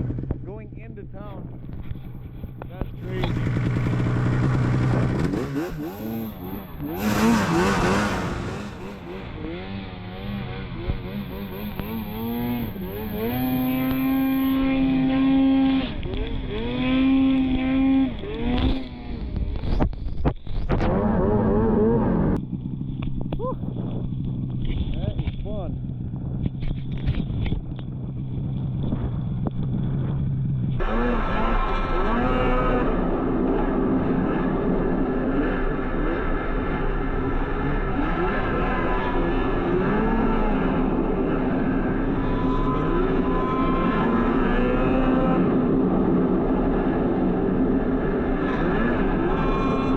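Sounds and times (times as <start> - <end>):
steady rushing noise: 0.0 - 14.6
snowmobile engine revving: 2.0 - 19.6, 30.8 - 49.9.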